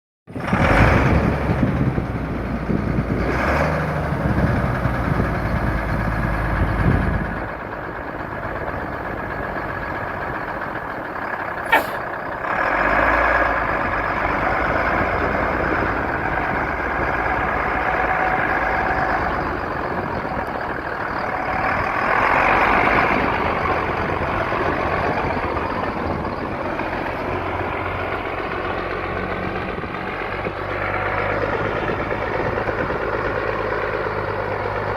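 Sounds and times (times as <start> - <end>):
garbage truck engine rumbling: 0.3 - 34.9
short sharp burst: 11.6 - 12.1.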